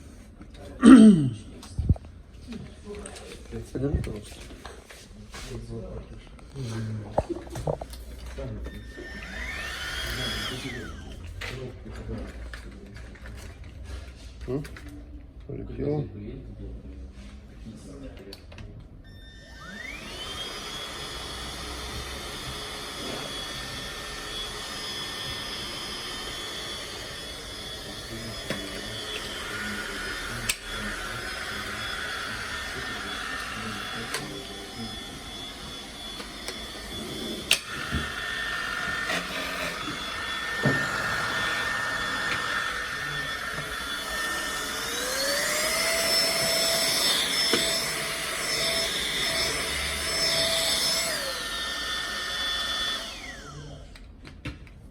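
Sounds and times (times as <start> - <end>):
vacuum cleaner motor whining: 6.5 - 12.2, 19.1 - 54.2.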